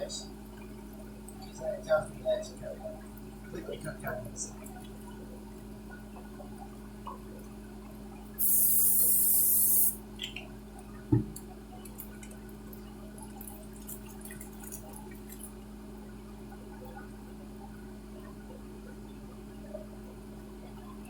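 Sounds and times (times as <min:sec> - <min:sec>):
steady low hum: 0:00.0 - 0:21.0
loud hiss: 0:08.4 - 0:10.0.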